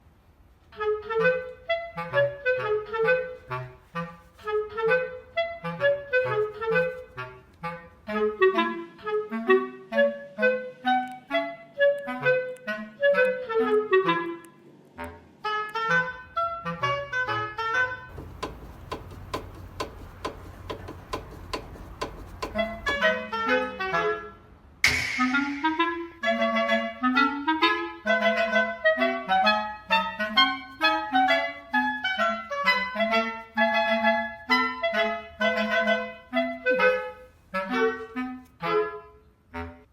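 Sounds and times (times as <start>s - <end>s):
lively melody over bass line: 18.1s - 23.1s, 24.8s - 27.0s
steady hiss with ticks: 18.1s - 23.1s.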